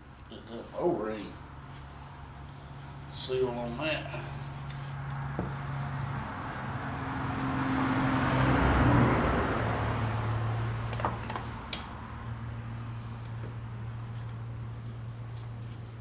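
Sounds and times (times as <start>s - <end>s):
road vehicle passing by: 0.2s - 16.0s
steady low hum: 9.6s - 16.0s.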